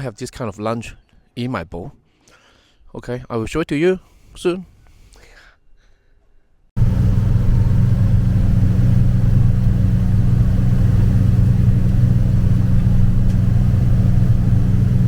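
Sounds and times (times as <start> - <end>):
engine running steadily: 6.8 - 15.0.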